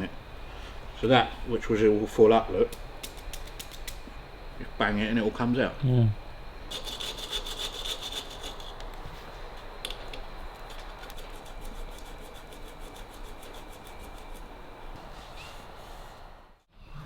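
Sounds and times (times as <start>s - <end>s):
sandpaper rubbing strokes: 6.7s - 9.3s, 10.6s - 16.2s.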